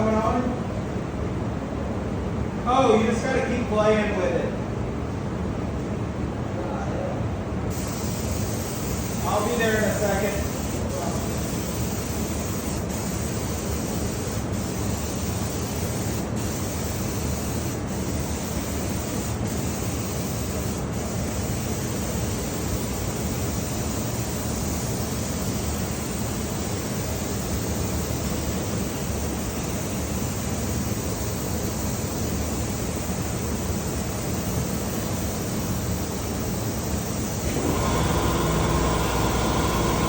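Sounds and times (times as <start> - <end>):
spray equipment air hiss: 7.7 - 40.0.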